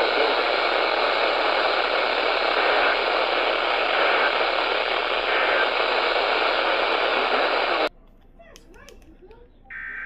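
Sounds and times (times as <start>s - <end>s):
radio static hiss: 0.0s - 7.9s.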